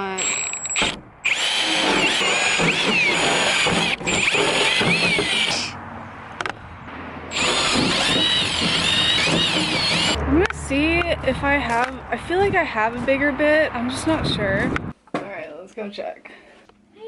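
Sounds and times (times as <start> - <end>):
power drill boring metal: 0.2 - 5.7, 7.3 - 10.2
drill bit squealing on metal: 7.3 - 10.2.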